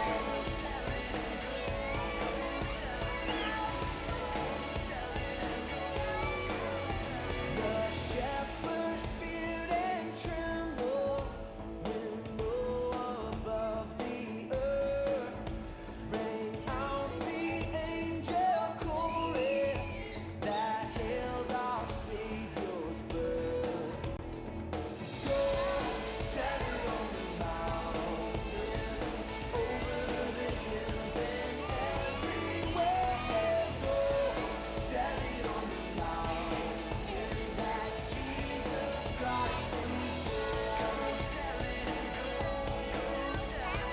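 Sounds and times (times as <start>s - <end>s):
children singing: 0.0s - 9.2s, 25.3s - 43.9s
pop-style backing track: 0.0s - 43.9s.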